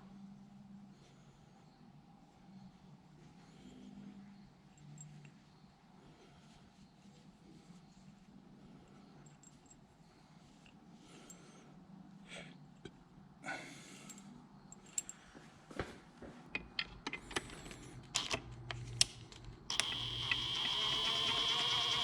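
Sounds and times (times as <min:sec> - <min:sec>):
high-pitched hum: 0:19.7 - 0:22.0.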